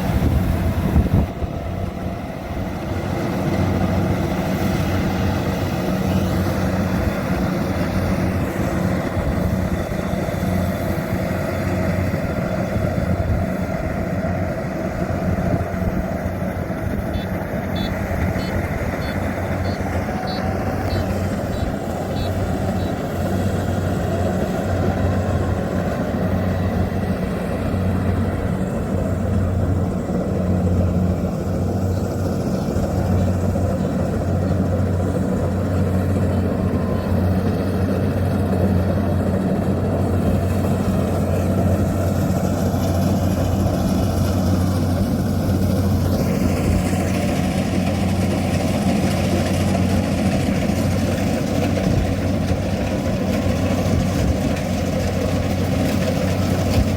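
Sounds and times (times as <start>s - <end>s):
engine humming: 0.0s - 56.9s.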